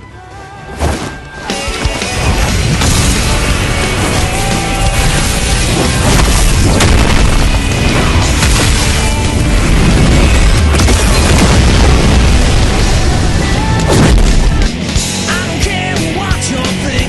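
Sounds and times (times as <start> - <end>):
loud music: 1.4 - 17.0
deep booming explosions: 2.2 - 15.3.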